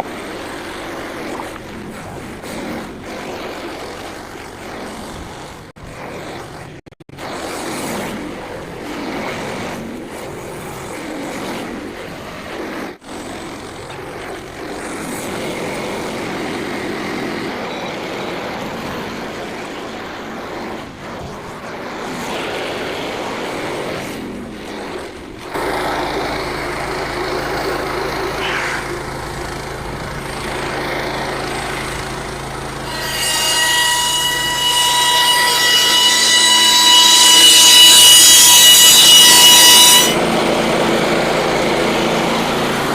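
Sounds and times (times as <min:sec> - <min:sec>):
loud ringing whine: 0:13.1 - 0:42.9
band sawmill cutting log: 0:18.5 - 0:42.9.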